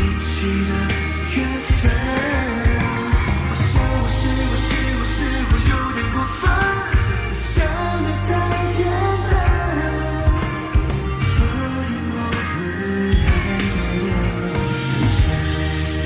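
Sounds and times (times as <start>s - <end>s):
heavy bass: 0.0s - 16.0s
person singing: 0.0s - 16.0s
steady drum beat: 0.0s - 16.0s.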